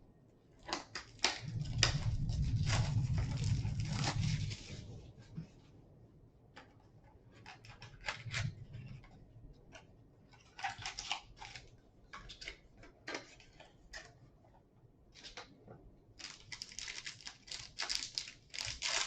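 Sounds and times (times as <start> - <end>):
cards rustling: 10.3 - 14.1, 16.2 - 19.0.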